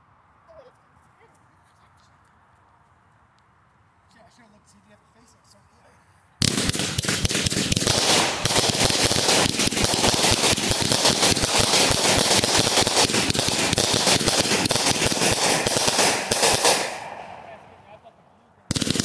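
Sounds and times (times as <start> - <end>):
firework rapid crackling pops: 6.4 - 17.2, 18.7 - 19.0.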